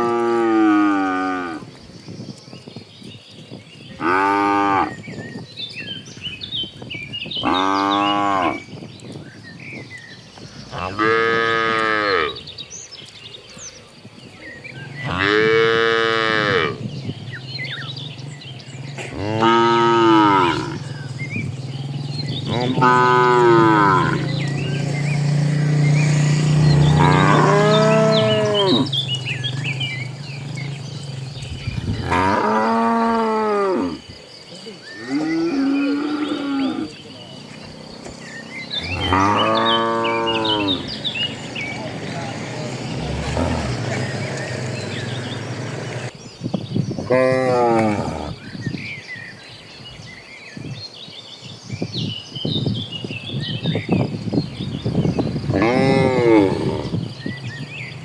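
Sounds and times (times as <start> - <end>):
faint birds chirping: 0.0 - 58.0
cattle mooing: 15.0 - 16.8, 18.8 - 24.8, 26.7 - 34.0, 35.0 - 46.0, 47.1 - 48.4, 55.5 - 57.0.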